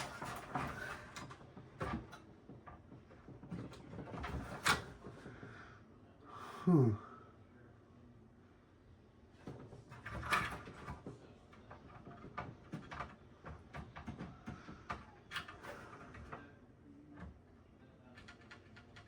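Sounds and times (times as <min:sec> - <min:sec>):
small clicks knocks and scrapes: 0:00.0 - 0:05.5, 0:09.4 - 0:16.5, 0:18.1 - 0:19.0.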